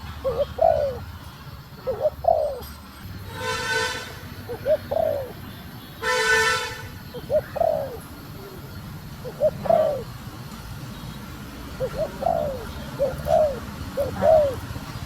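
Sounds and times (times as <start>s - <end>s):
dove cooing: 0.0s - 1.2s, 1.8s - 2.8s, 4.4s - 6.4s, 7.0s - 10.3s, 11.6s - 15.0s.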